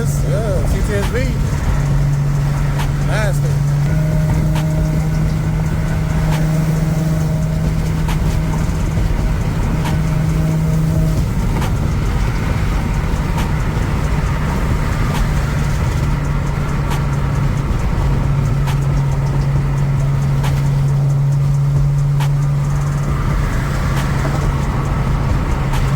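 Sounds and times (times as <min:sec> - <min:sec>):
car engine hum: 0:00.0 - 0:25.9
road and tyre noise: 0:00.0 - 0:25.9.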